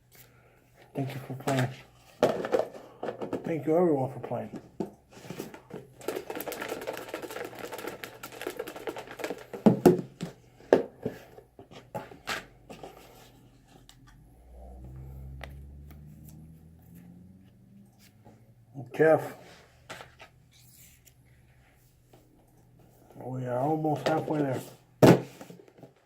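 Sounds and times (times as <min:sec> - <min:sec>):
paper tickets rustling in container: 0:01.0 - 0:01.8, 0:05.2 - 0:09.8.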